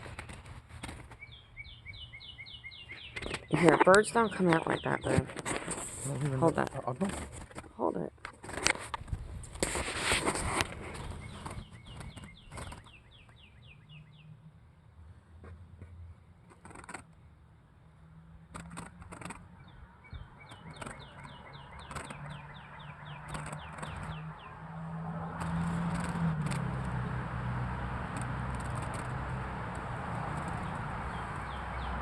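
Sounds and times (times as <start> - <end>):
small bird chirping: 0.0 - 5.3, 10.8 - 14.4, 19.2 - 24.8, 30.2 - 32.0.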